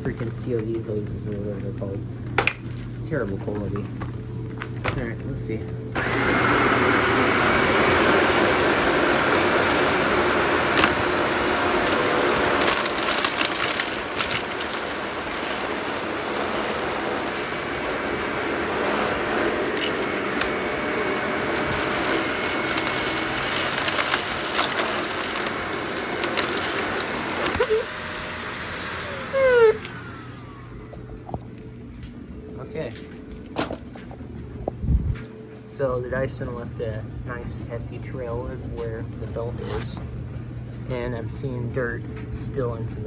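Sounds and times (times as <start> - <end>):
vacuum cleaner on carpet: 6.0 - 31.4.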